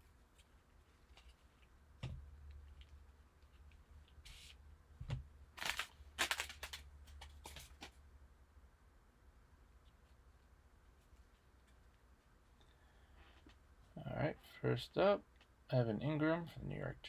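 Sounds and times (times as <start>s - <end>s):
cards rustling and scraping: 0.0s - 1.8s, 2.4s - 4.6s, 5.5s - 8.0s.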